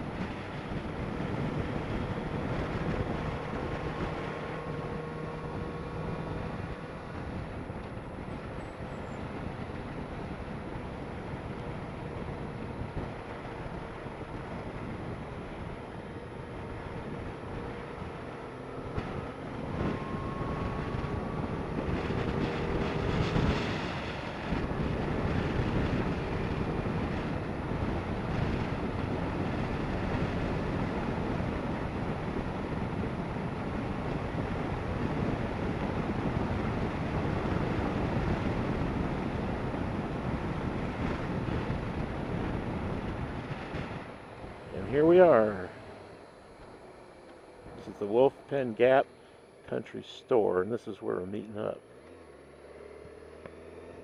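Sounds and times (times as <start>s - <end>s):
motorcycle engine running: 0.0s - 49.8s
wind rushing over microphone: 0.0s - 54.0s.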